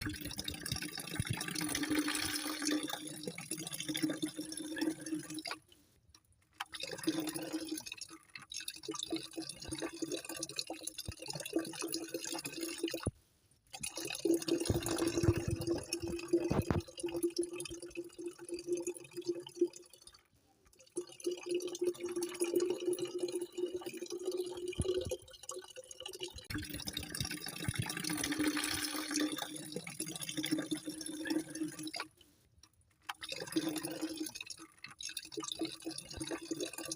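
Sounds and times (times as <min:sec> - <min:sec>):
running dripping water: 0:00.0 - 0:05.7, 0:06.6 - 0:13.1, 0:13.7 - 0:32.2, 0:33.1 - 0:36.9.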